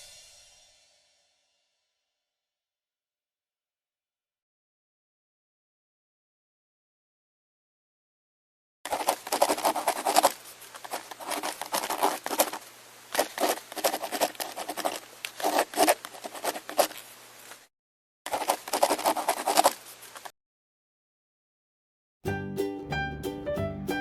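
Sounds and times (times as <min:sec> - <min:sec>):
drawing tool scratching on paper: 0:08.9 - 0:17.1, 0:18.3 - 0:20.3.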